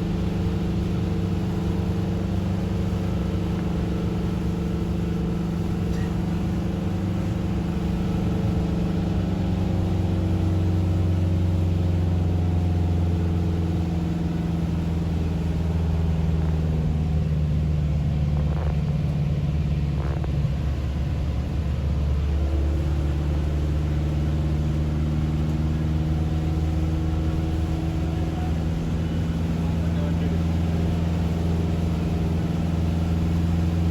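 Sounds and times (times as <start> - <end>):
car engine and road noise: 0.0 - 33.9.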